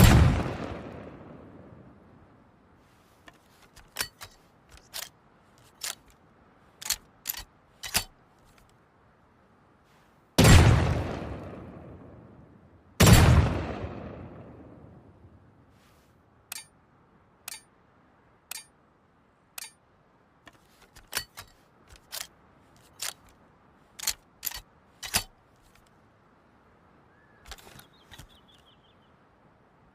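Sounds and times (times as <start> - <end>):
shotgun action clicking: 3.3 - 6.2, 6.8 - 8.8, 20.5 - 25.9.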